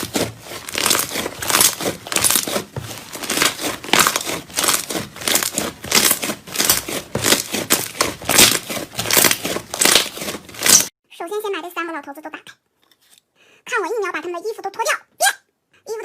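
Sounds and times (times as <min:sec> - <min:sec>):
slime squishing by hand: 0:00.0 - 0:10.9.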